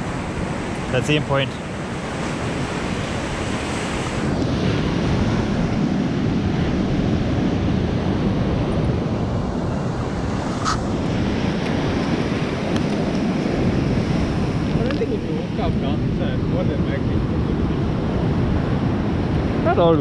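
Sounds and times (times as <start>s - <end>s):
ocean surf washing ashore: 0.0s - 20.0s
wind buffeting microphone: 0.0s - 20.0s.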